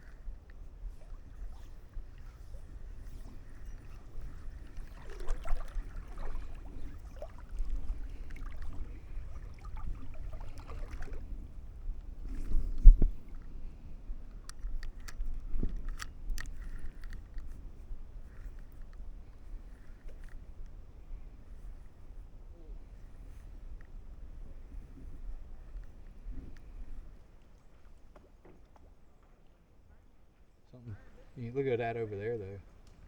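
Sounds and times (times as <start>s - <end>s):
paddle strokes in water: 0.0s - 22.2s.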